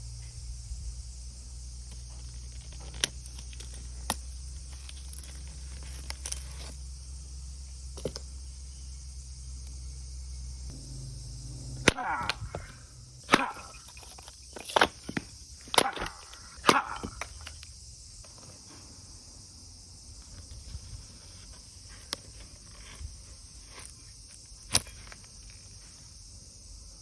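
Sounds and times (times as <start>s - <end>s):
knife striking firewood: 11.7s - 17.6s.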